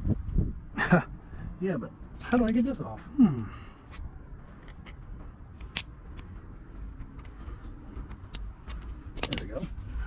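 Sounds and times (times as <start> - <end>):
clicks of hand tools and metal parts: 8.1 - 9.6.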